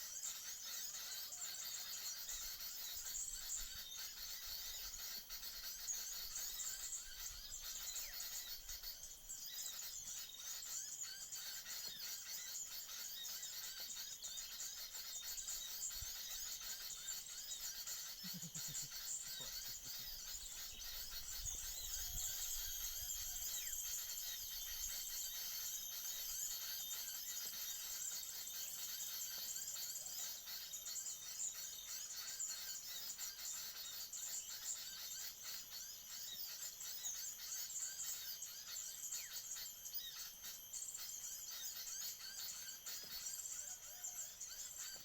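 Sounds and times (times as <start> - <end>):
insects chirring: 0.1 - 45.0
birds chirping: 12.6 - 29.8.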